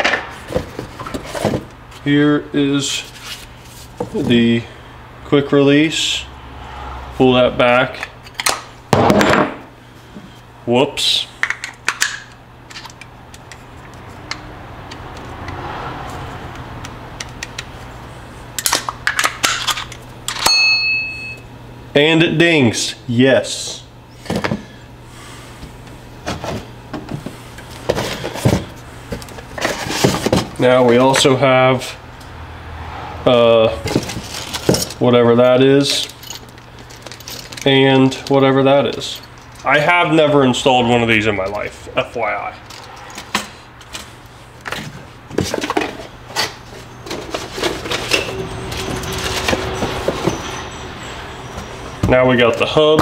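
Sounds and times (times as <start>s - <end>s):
steady low hum: 0.0s - 53.0s
hard parts clicking and knocking: 33.8s - 35.0s, 35.9s - 39.7s.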